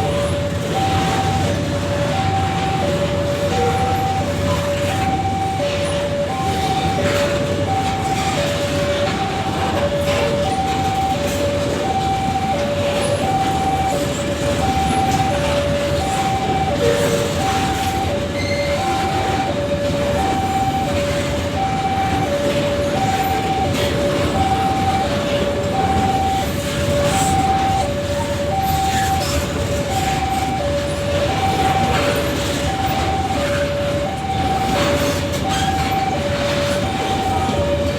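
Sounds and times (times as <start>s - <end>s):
two-tone electronic warning alarm: 0.0s - 37.9s.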